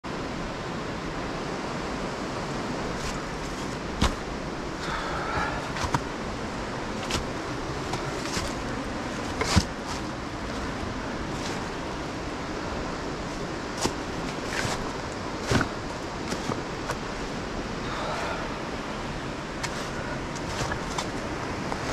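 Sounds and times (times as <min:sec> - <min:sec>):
river rapids rushing: 0:00.1 - 0:21.9.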